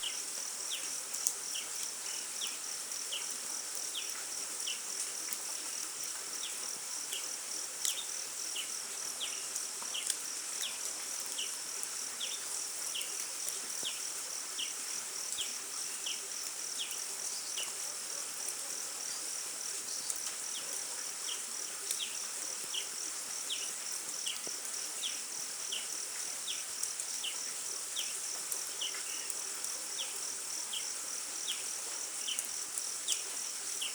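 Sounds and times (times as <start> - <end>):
insect chorus: 0.0 - 33.9.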